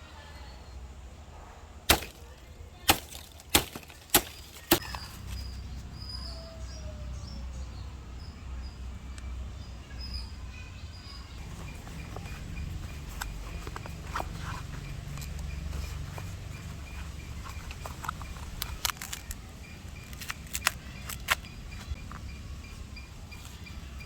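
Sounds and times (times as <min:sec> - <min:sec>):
blade chopping into wood: 0:01.9 - 0:05.0.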